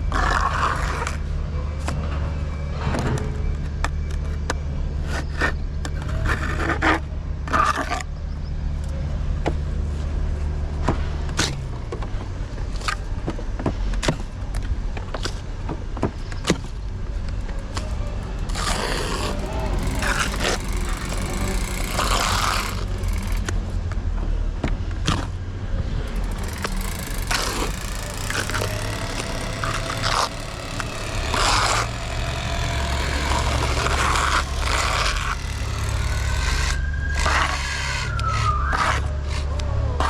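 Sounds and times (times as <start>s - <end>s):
low machine rumble: 17.6s - 23.7s, 25.8s - 37.4s
knocks and scrapes: 26.0s - 39.0s.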